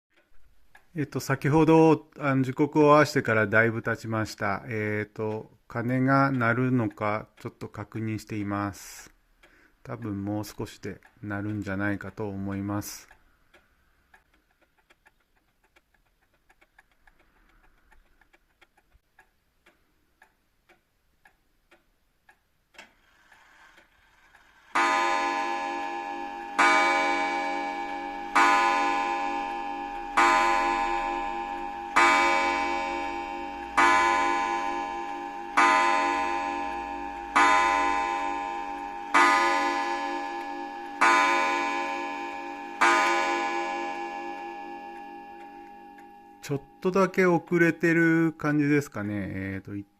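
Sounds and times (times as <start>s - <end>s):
clock mechanism click: 0.1s - 49.0s
pendulum clock ticking: 0.1s - 49.9s
clock bell striking: 24.8s - 48.0s.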